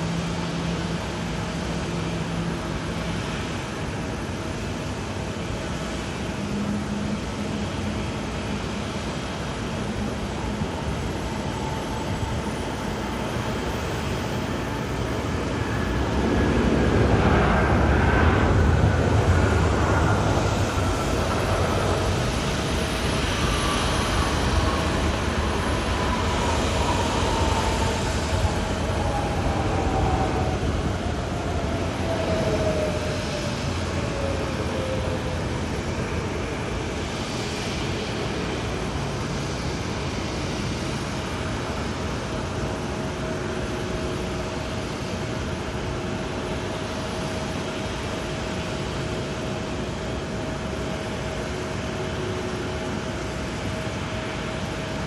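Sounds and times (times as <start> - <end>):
jet airliner rumble: 0.0 - 55.0
jet engine whine: 0.0 - 55.0.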